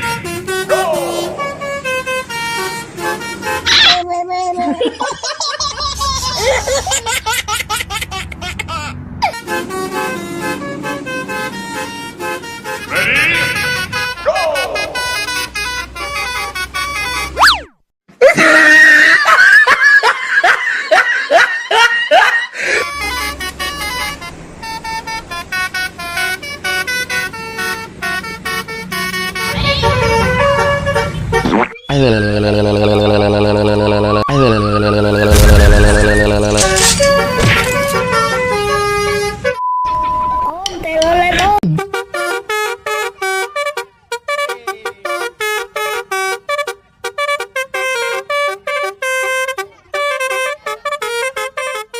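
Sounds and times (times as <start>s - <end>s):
multi-tone bus horn tune: 0.0s - 4.0s, 9.0s - 17.4s, 22.6s - 40.3s, 41.3s - 51.9s.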